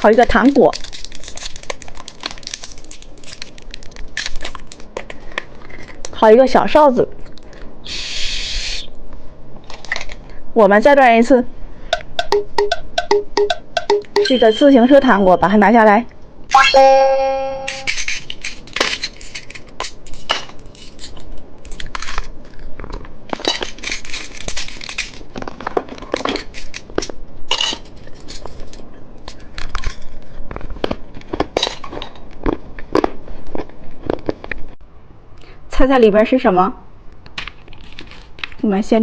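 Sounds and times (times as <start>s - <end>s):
plastic packaging crinkling: 0.0s - 6.1s
short pitched chime: 16.5s - 17.9s.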